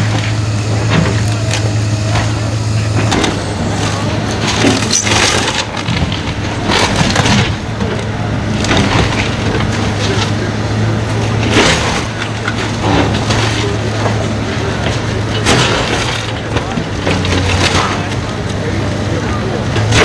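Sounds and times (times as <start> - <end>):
wood cracking and crashing down: 0.0 - 8.0, 11.4 - 18.4
heavy machine engine running: 0.0 - 20.0.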